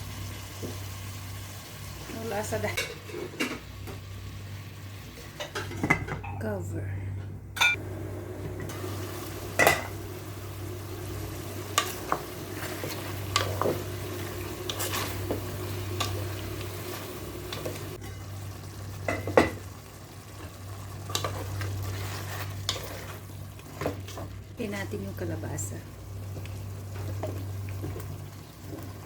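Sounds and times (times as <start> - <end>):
food sizzling in a pot: 0.0 - 5.6, 7.8 - 29.0.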